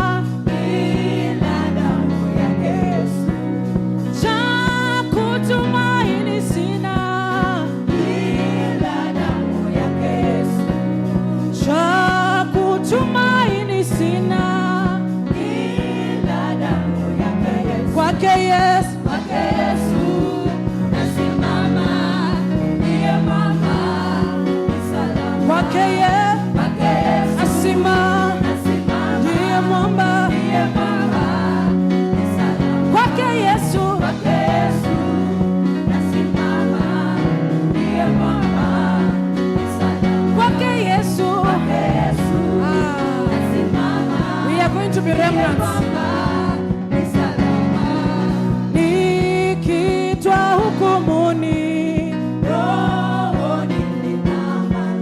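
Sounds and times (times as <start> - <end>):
drums beating: 0.0 - 12.7, 14.4 - 54.8
bass notes: 0.0 - 55.0
voices singing gospel: 0.0 - 55.0
band playing: 14.0 - 55.0.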